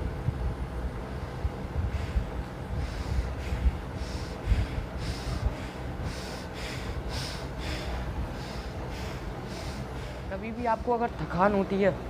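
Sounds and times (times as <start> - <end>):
low rumble with thumps: 0.0 - 11.5
forceful rhythmic nose breathing: 1.4 - 10.5.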